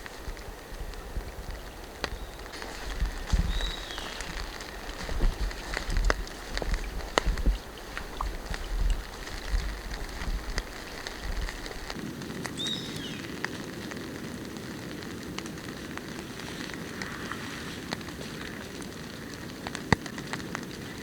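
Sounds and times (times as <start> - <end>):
sharp drip ticks: 0.0 - 16.3
rain falling in forest: 0.0 - 21.0.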